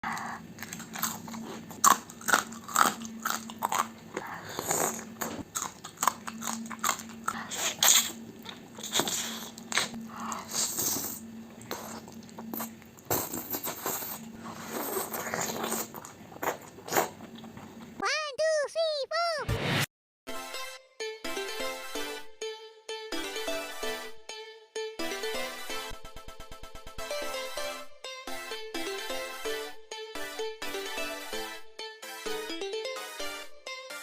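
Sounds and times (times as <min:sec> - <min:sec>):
crunchy chewing: 0:00.1 - 0:18.0.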